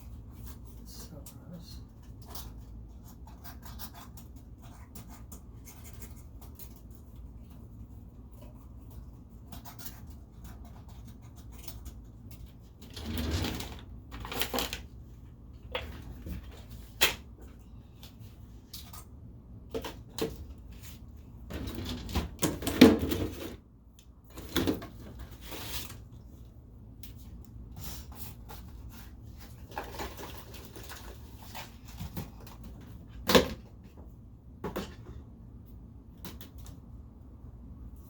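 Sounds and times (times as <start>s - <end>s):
plumbing parts and tools rattling: 12.8s - 14.8s.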